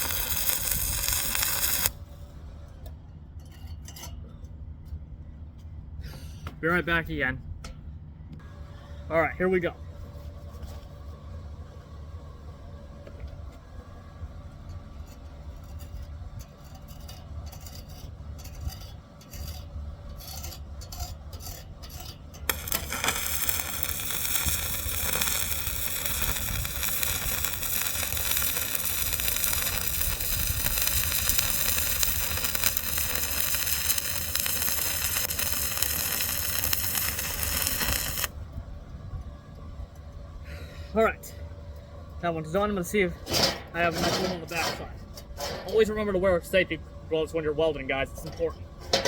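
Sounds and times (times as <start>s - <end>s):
arc welding crackling: 0.0s - 2.1s, 22.4s - 38.3s.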